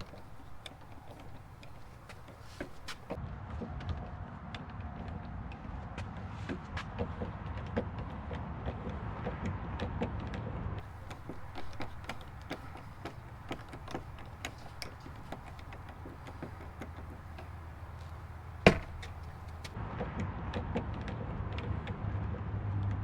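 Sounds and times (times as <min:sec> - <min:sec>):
loud knock: 0:18.5 - 0:19.7.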